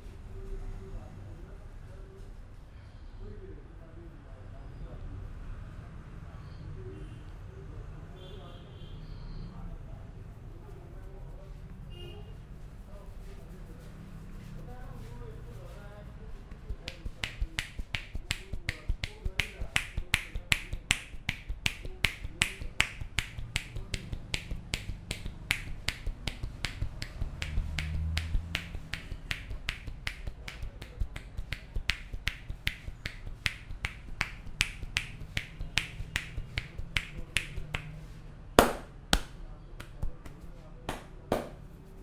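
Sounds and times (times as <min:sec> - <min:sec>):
hands clapping on head: 0:16.5 - 0:38.0, 0:38.6 - 0:41.6.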